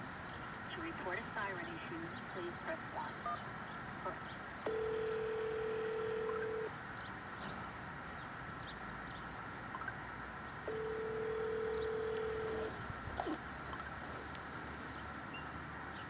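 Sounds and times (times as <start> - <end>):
telephone ringback tone: 4.7 - 6.7, 10.7 - 12.7.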